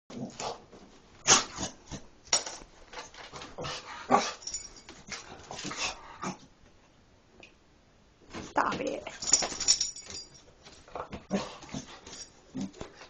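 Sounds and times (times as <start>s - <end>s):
dog sneezing: 1.2s - 2.0s.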